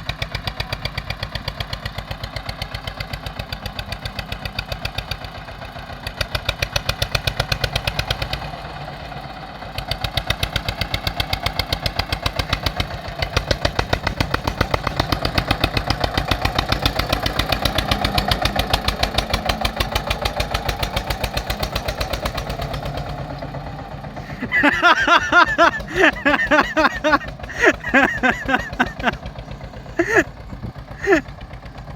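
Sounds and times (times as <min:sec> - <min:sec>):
tractor engine running: 0:00.0 - 0:31.9.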